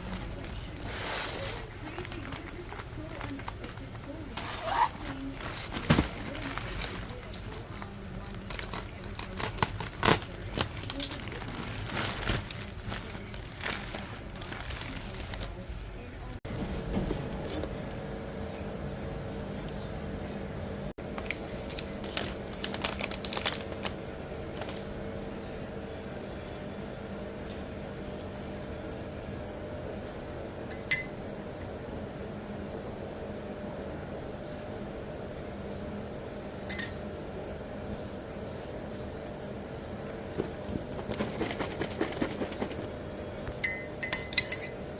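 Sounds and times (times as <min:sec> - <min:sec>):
rustling and crinkling: 0:00.0 - 0:18.0, 0:21.0 - 0:25.1, 0:40.2 - 0:42.9
steady low hum: 0:00.0 - 0:44.9
kitchenware clinking: 0:30.7 - 0:31.8, 0:36.7 - 0:37.1, 0:43.5 - 0:44.9.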